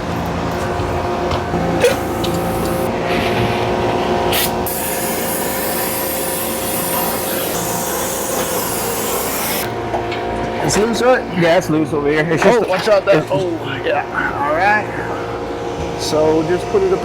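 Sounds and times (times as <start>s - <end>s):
machinery hum: 0.0s - 17.0s
brazing torch hissing: 1.6s - 3.7s, 4.3s - 9.7s.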